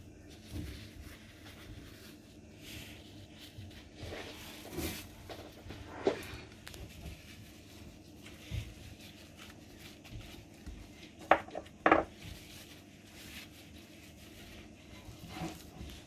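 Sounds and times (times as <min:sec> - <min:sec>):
dish knocking: 0:11.2 - 0:12.1.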